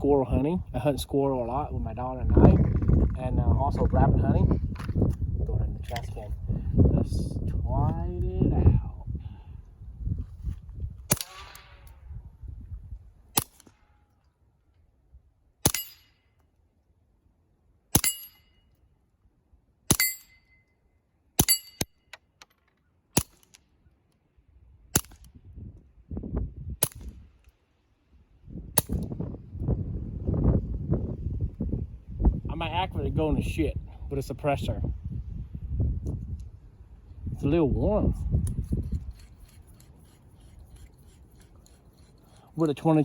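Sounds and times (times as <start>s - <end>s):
suppressed gunshots: 11.1s - 12.0s.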